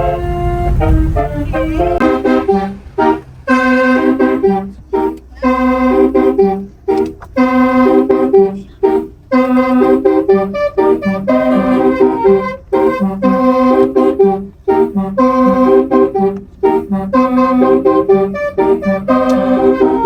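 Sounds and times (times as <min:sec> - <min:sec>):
multi-tone air horns playing tune: 0:00.0 - 0:20.0.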